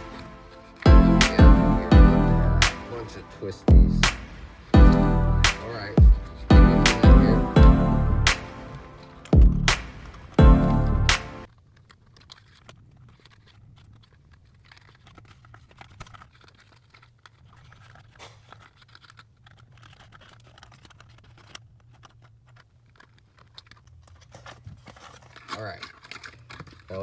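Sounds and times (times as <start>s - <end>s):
twist ties clicking and crinkling: 0.0s - 1.8s, 8.3s - 27.0s.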